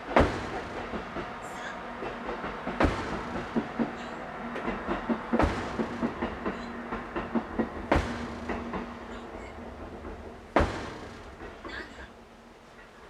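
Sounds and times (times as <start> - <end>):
sledgehammer heavy blows: 10.5 - 11.4.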